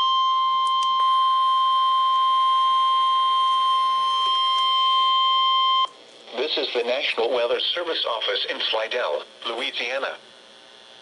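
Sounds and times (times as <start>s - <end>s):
steady alarm tone: 0.0s - 5.9s.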